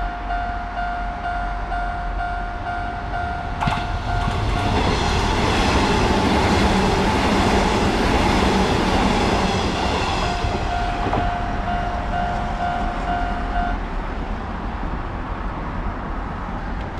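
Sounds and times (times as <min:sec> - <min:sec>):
level crossing warning bell: 0:00.0 - 0:04.9, 0:09.8 - 0:13.8
train rumble and wheel noise: 0:00.0 - 0:16.9.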